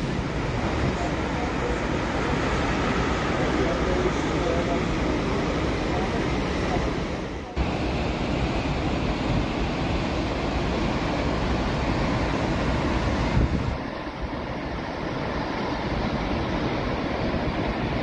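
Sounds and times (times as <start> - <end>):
rushing water: 0.0 - 18.0
wind buffeting microphone: 0.0 - 18.0.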